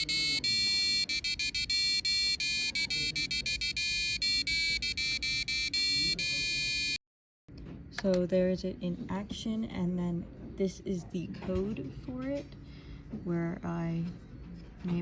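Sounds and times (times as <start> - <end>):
buzzer playing beeping tune: 0.0 - 7.0.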